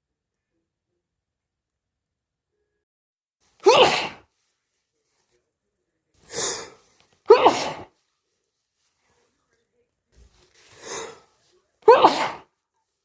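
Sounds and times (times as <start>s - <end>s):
person sneezing: 3.6s - 4.3s, 6.3s - 8.0s, 10.7s - 12.6s.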